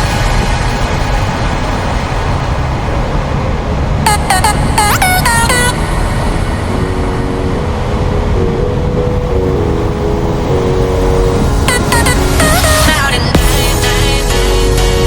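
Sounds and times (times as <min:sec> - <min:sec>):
vehicle engine rumble: 0:00.0 - 0:14.8
music with simple melody: 0:04.1 - 0:15.0.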